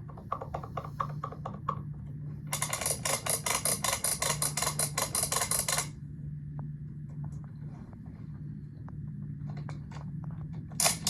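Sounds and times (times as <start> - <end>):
plastic toy clicking: 2.5 - 5.9.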